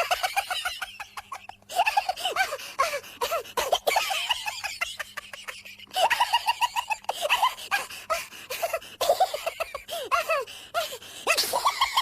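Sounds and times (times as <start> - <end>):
high-pitched laughter: 0.0 - 3.0, 3.6 - 7.9, 11.3 - 12.0.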